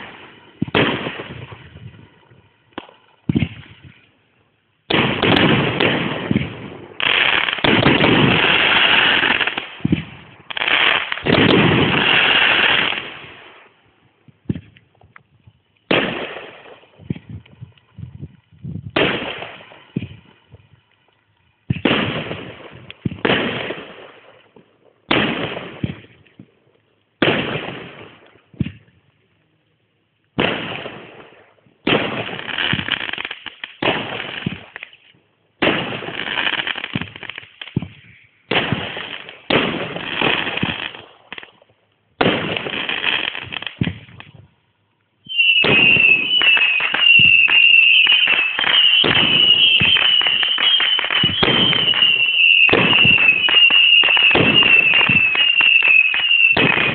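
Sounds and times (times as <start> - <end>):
dense firework crackling: 0.0 - 28.9, 30.3 - 44.6, 45.2 - 56.9
high wavering whistle: 45.3 - 56.6.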